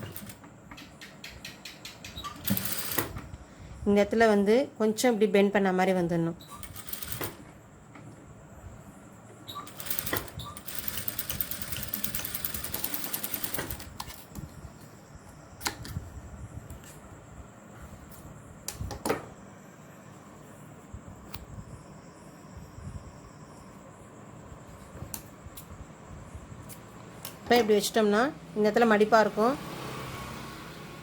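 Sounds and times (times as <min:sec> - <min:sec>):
sewing machine stitching: 0:02.2 - 0:03.2, 0:06.5 - 0:07.4, 0:09.5 - 0:14.1.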